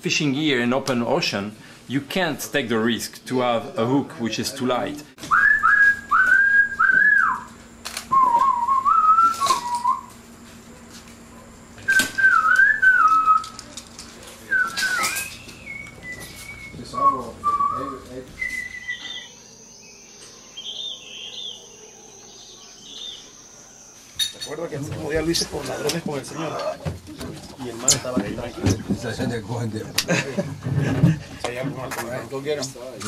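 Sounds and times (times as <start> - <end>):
person whistling: 5.3 - 7.5, 8.1 - 10.1, 11.9 - 13.6, 14.5 - 19.3
bird chirps: 14.5 - 24.5
high-pitched insect drone: 14.7 - 26.7.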